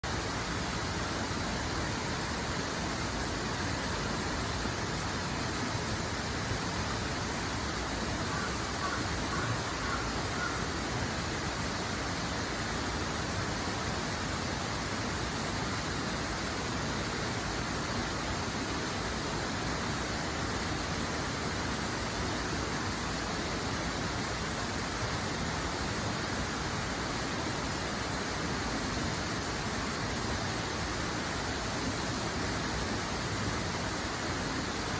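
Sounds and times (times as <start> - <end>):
running water: 0.1 - 34.9
faint bird calls: 8.2 - 10.8.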